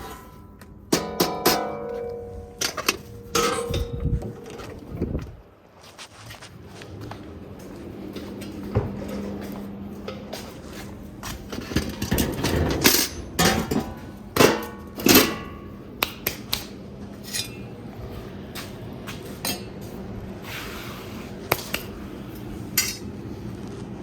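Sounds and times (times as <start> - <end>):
metal tools clanking on metal: 0.0 - 4.9, 11.5 - 15.7, 17.2 - 17.8, 19.4 - 19.8, 21.7 - 23.1.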